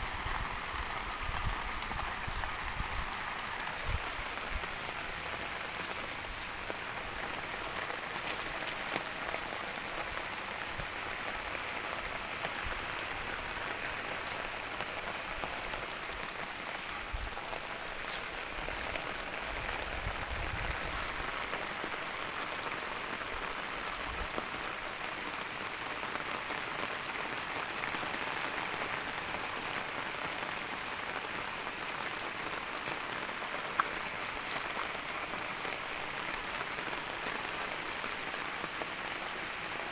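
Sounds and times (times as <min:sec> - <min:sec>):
steady rain hiss: 0:00.0 - 0:39.9
rain drop ticks: 0:04.3 - 0:25.1, 0:29.7 - 0:31.2, 0:32.0 - 0:37.6.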